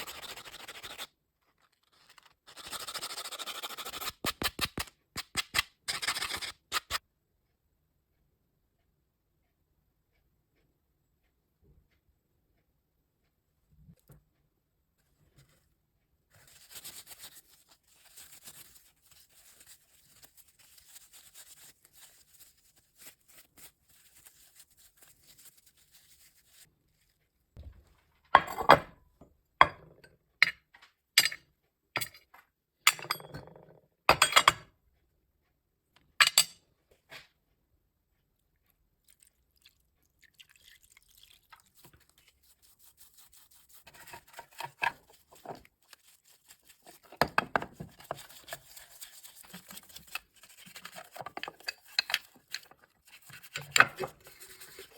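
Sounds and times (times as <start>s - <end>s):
scratchy rubbing on metal: 42.4s - 47.2s.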